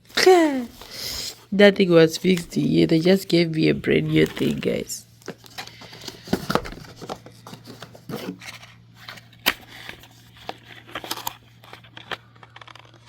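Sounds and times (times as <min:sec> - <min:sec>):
cardboard box clicks and rustles: 0:04.2 - 0:13.0.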